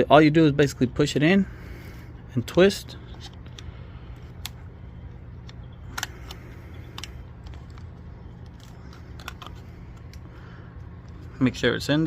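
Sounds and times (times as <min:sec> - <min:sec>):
steady low hum: 0:00.0 - 0:12.0
plastic housing handled: 0:06.9 - 0:10.2.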